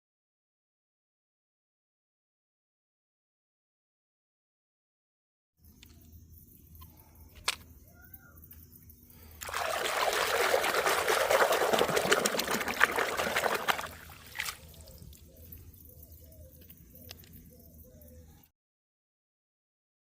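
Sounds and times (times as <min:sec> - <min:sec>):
water pouring: 0:09.4 - 0:15.2.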